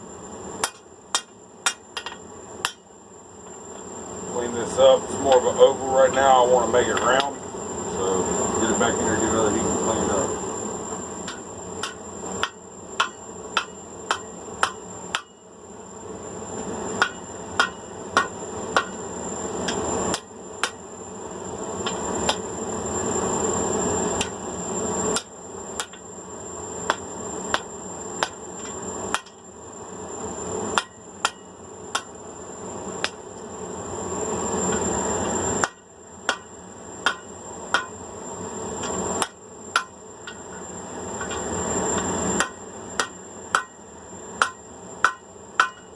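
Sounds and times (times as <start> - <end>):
hammer striking steel on anvil: 0.6 - 2.8, 11.2 - 15.4, 17.0 - 19.0, 25.2 - 26.0, 29.1 - 29.4, 30.8 - 32.1, 35.6 - 38.0, 39.2 - 40.6, 42.4 - 43.8, 44.4 - 45.9.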